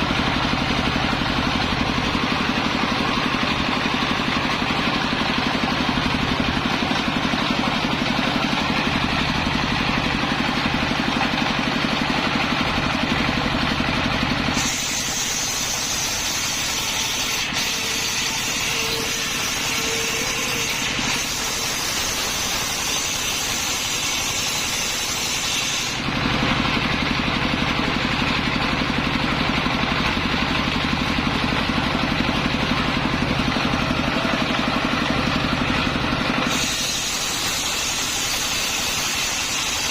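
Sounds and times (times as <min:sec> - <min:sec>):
saw blade cutting timber: 0:00.0 - 0:29.0, 0:29.6 - 0:39.9
circular saw engine droning: 0:12.6 - 0:28.0.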